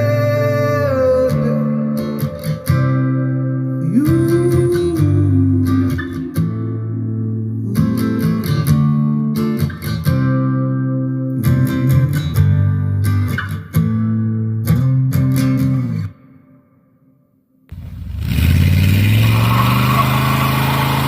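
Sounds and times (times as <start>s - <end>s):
strummed guitar over a beat: 0.0s - 16.6s.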